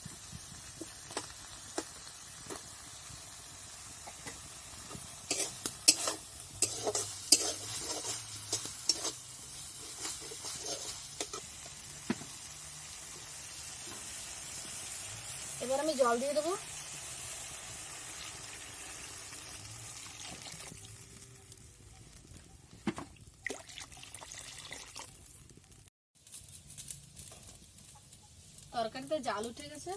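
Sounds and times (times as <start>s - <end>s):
food sizzling in oil: 0.0s - 29.9s
spatula scraping a pan: 4.1s - 11.8s.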